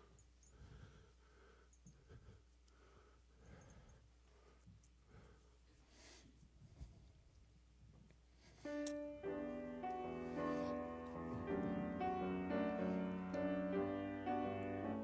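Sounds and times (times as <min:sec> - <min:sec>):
piano playing slow chords: 0:08.7 - 0:15.0.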